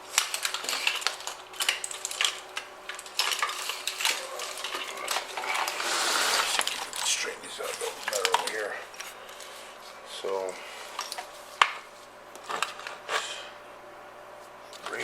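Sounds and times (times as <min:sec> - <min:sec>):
wire connectors clicking and clattering: 0:00.0 - 0:09.5, 0:10.4 - 0:13.0
rustling scrape: 0:03.6 - 0:07.1.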